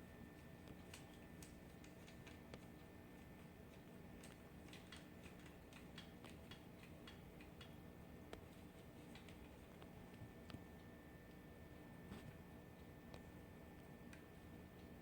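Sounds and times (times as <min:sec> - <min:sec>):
cat crunching dry kibble: 0:00.6 - 0:07.7.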